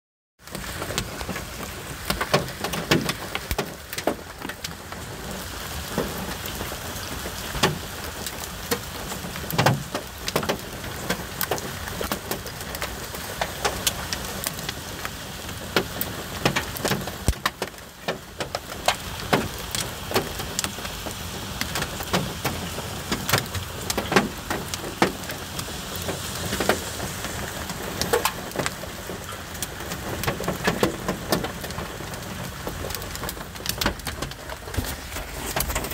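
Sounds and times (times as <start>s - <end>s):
hailstones striking hard surfaces: 0.5s - 35.9s
heavy rain hissing: 18.2s - 35.9s.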